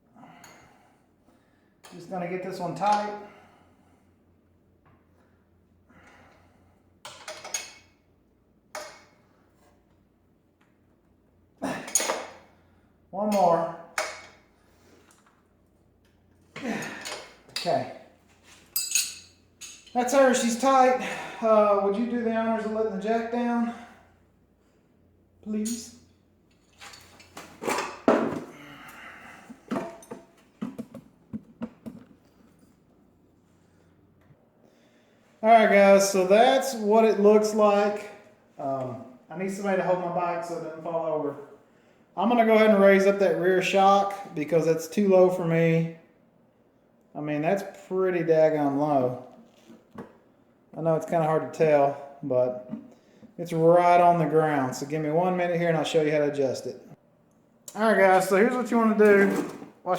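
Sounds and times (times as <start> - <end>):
metal clink with ring: 18.8 - 20.0.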